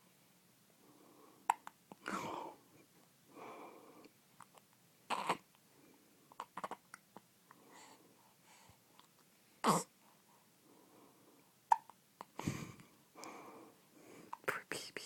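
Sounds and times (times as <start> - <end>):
soft breath: 0.8 - 4.2, 7.5 - 11.6, 12.2 - 15.0.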